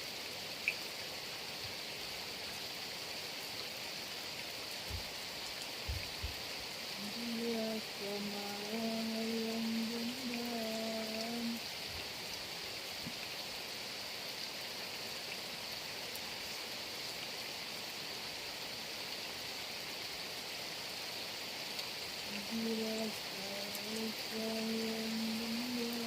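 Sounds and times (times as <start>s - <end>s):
heavy rain falling: 0.0s - 26.0s.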